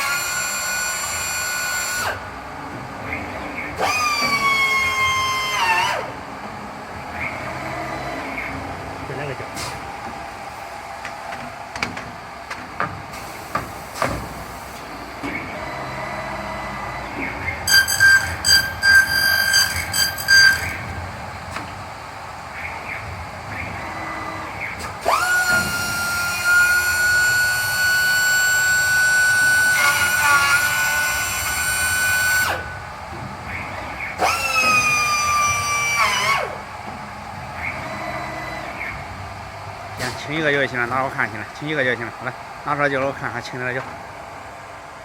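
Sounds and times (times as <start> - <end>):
background machine noise: 0.0 - 45.0
high-speed cutter motor whine: 23.6 - 33.0, 33.6 - 36.7.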